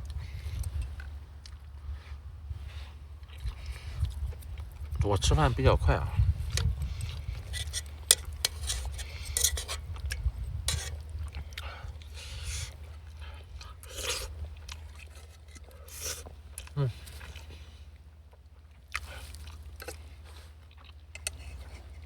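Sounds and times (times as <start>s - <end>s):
chewing: 0.0s - 5.0s, 6.2s - 22.0s
steady low rumble: 0.0s - 17.9s
utensils clicking against dish: 7.4s - 9.8s.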